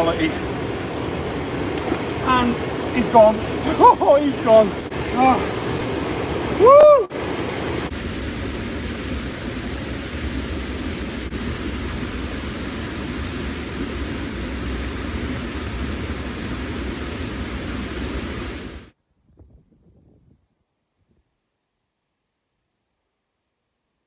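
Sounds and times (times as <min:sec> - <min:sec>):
stream water flowing: 0:00.0 - 0:18.9.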